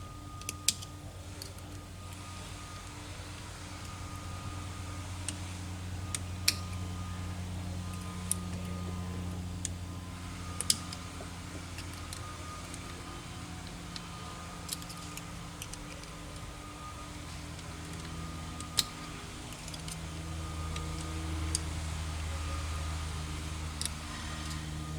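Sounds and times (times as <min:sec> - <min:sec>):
steady low hum: 0:00.0 - 0:24.9
metallic clicks and taps: 0:06.1 - 0:06.8, 0:10.6 - 0:11.0.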